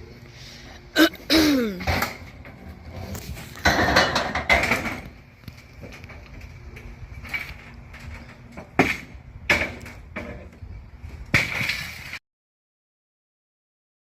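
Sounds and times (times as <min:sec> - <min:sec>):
scrap metal clanking: 0:01.0 - 0:05.1.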